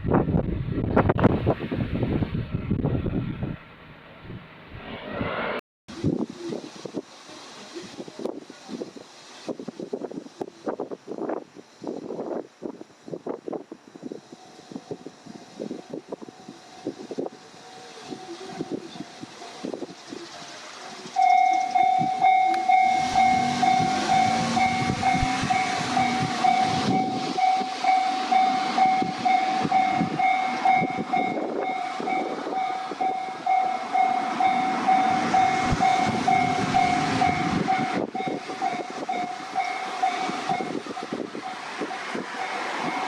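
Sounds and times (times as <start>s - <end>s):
train running noise: 5.9s - 43.0s
level crossing warning bell: 20.5s - 43.0s.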